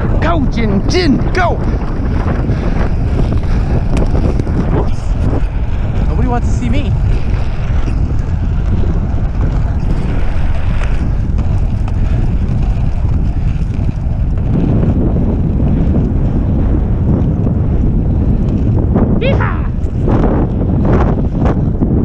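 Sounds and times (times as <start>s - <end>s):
skate wheels rolling on pavement: 0.0s - 22.0s
wind buffeting microphone: 0.0s - 22.0s.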